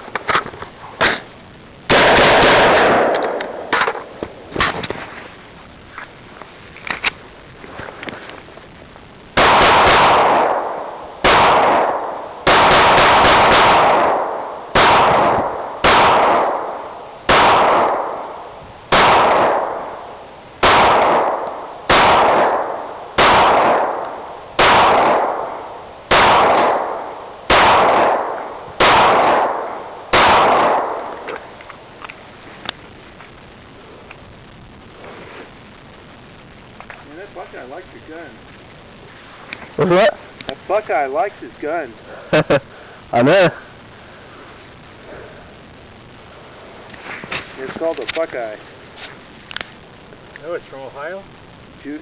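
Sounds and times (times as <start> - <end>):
gunshots with echo: 1.9 - 4.2, 9.4 - 20.0, 20.6 - 31.3.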